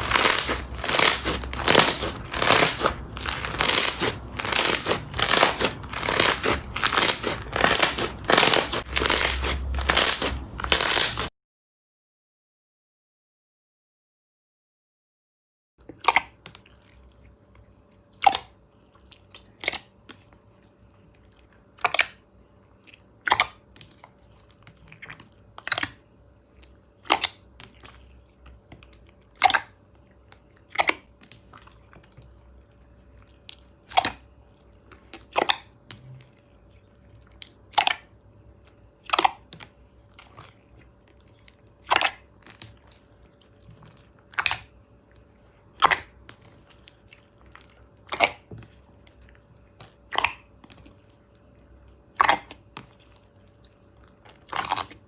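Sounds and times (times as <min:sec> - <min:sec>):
slime squeezed by hand: 0:00.0 - 0:11.3.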